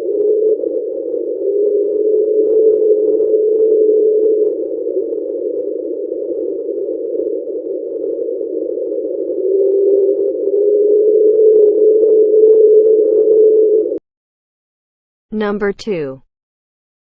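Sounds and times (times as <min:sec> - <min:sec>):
deep underwater hum: 0:00.0 - 0:14.0.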